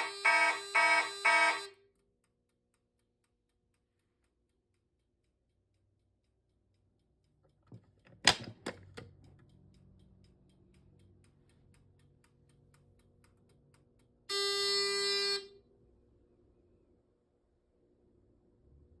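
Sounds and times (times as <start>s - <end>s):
fire alarm horn blast: 0.0s - 1.9s, 14.3s - 15.7s
light ticking: 1.8s - 8.2s, 8.8s - 14.3s.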